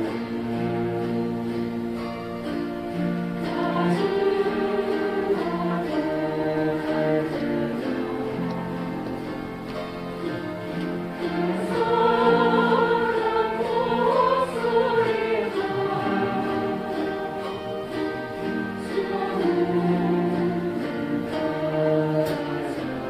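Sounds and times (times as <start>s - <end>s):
strummed zithers playing: 0.0s - 23.0s
group of voices singing: 3.2s - 9.4s, 10.7s - 23.0s.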